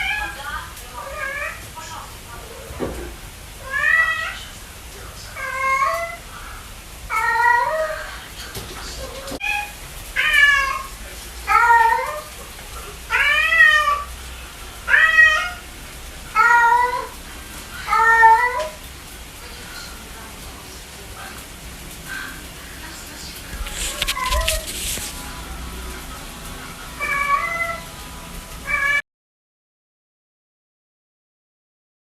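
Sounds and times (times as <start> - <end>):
cat meowing: 0.0 - 0.4, 1.0 - 1.7, 3.6 - 4.5, 5.4 - 6.2, 7.1 - 8.1, 9.1 - 12.4, 13.1 - 14.1, 14.9 - 15.7, 16.3 - 17.2, 17.8 - 18.8, 23.6 - 25.1, 26.9 - 27.9, 28.6 - 29.0.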